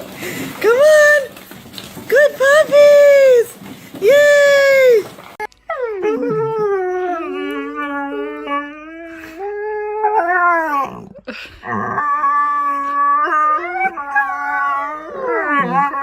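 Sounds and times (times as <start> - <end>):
dog howling: 5.7 - 16.0.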